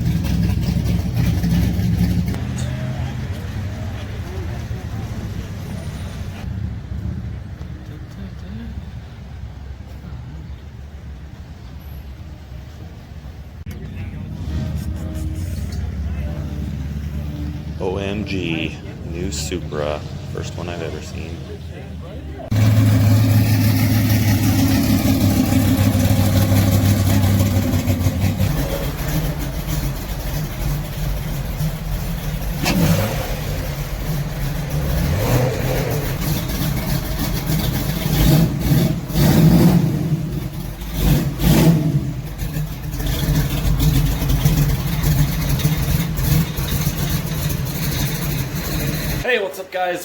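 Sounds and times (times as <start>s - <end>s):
car engines running: 0.0s - 49.3s
engine revving: 13.7s - 21.5s, 22.5s - 49.2s.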